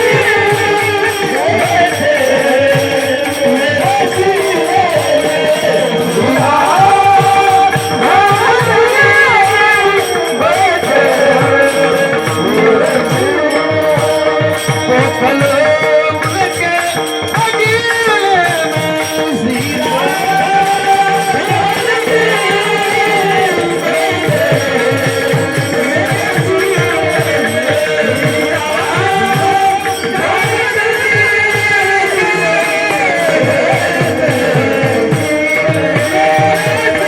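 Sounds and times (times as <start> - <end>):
hand drum beat: 0.0 - 37.0
jingling hand percussion: 0.0 - 37.0
man singing: 0.0 - 37.0
held drone: 18.6 - 37.0.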